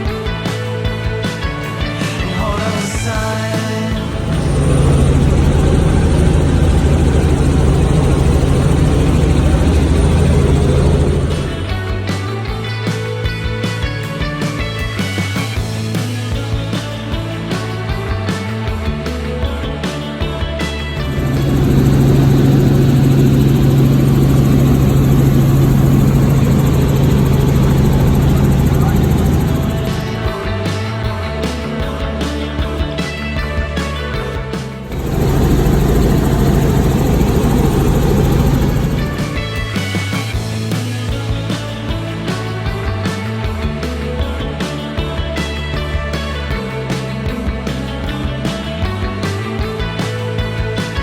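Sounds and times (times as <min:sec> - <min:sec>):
helicopter rotor and engine drone: 0:04.0 - 0:11.9, 0:21.0 - 0:30.4, 0:34.8 - 0:41.1
faint high whine: 0:21.0 - 0:30.2, 0:34.9 - 0:40.2.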